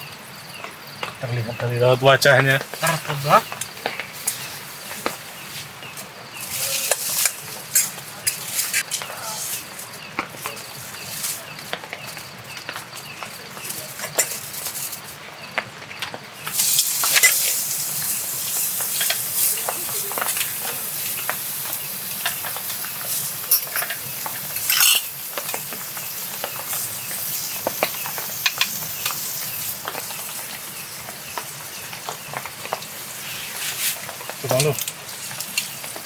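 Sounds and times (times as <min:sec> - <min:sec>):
meat sizzling: 0:00.0 - 0:14.9, 0:16.4 - 0:36.0
utensil scraping a pan: 0:06.4 - 0:09.7.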